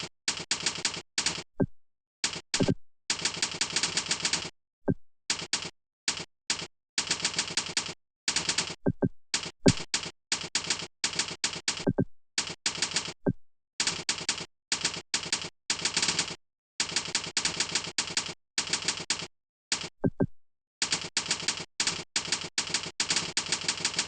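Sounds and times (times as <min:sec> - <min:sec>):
fast typing on keyboard: 0:00.0 - 0:01.5, 0:02.2 - 0:04.5, 0:05.3 - 0:13.2, 0:13.8 - 0:20.2, 0:20.8 - 0:24.0.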